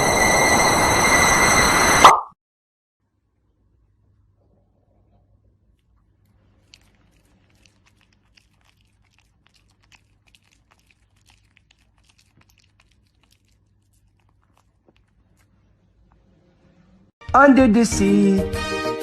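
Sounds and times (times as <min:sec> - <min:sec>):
dog chewing crunchy food: 0:05.8 - 0:16.1.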